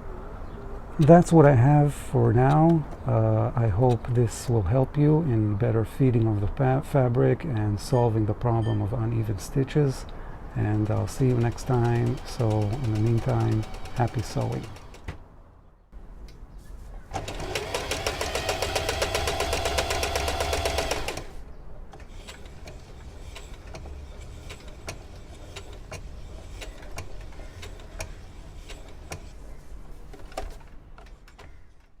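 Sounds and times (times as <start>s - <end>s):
sewing machine stitching: 10.6s - 15.1s, 17.1s - 21.4s, 22.1s - 29.4s
sewing machine ticks: 10.7s - 15.1s, 17.2s - 21.3s, 22.1s - 29.4s.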